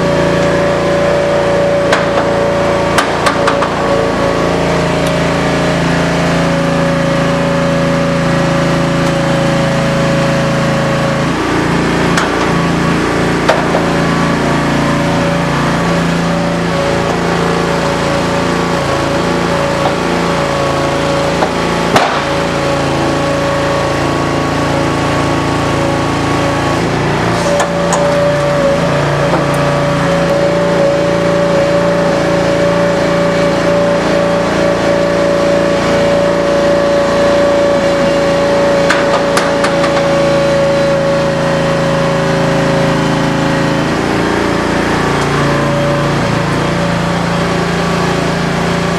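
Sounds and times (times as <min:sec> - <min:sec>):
gas engine running: 0:00.0 - 0:48.9
hydraulic pump whine: 0:00.0 - 0:48.9
sharp knock: 0:21.4 - 0:22.4.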